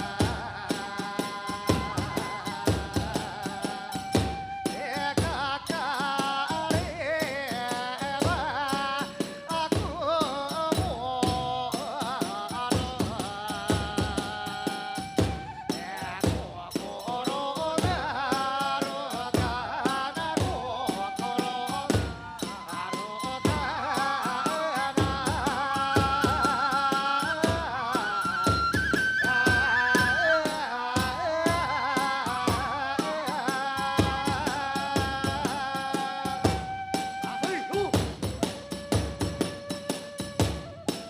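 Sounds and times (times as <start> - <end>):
bamboo flute melody: 0.0 - 41.0
steady drum beats: 0.0 - 41.0.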